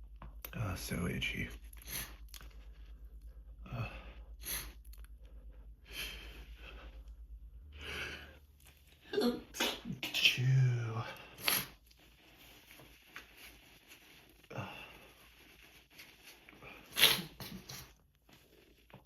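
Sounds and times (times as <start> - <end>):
person sneezing: 11.4 - 11.8, 16.9 - 17.9.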